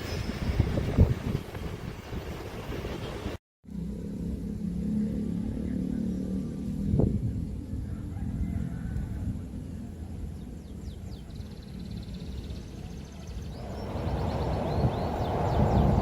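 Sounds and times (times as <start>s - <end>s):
small birds chirping: 10.4s - 16.0s
low vehicle rumble: 13.4s - 16.0s
loud rushing noise: 13.5s - 16.0s.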